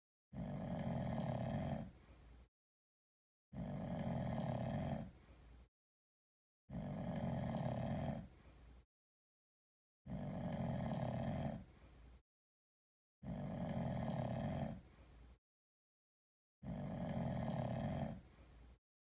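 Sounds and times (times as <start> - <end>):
cat snoring: 0.4 - 1.9, 3.6 - 5.1, 6.7 - 8.3, 10.1 - 11.7, 13.2 - 14.8, 16.6 - 18.2.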